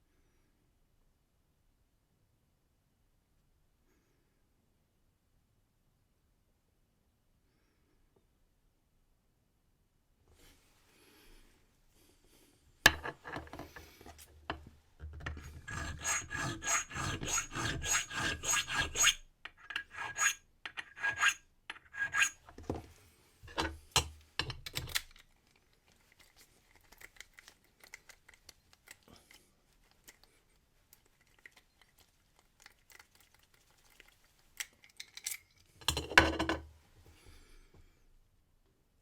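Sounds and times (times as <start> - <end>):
file rasping on brass: 15.3 - 22.4.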